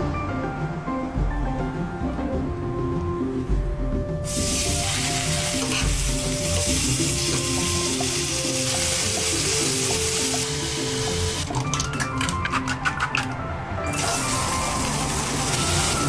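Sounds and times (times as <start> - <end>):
food frying in hot oil: 4.2 - 12.2, 13.9 - 16.0.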